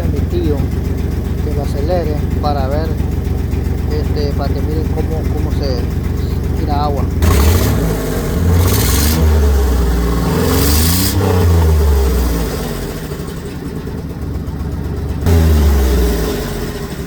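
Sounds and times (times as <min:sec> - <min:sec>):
van engine revving and misfiring: 0:00.0 - 0:17.0.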